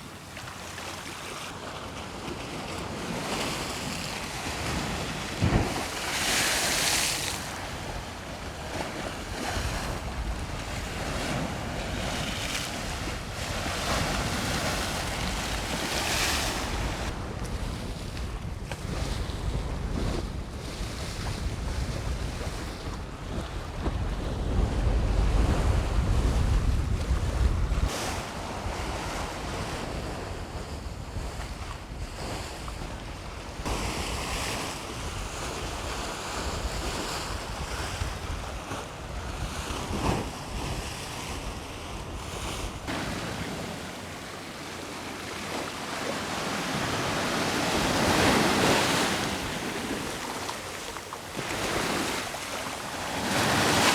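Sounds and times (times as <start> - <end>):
sea waves washing onto shore: 0.0 - 20.3, 32.6 - 53.9
wind buffeting microphone: 2.4 - 44.4, 45.3 - 53.9.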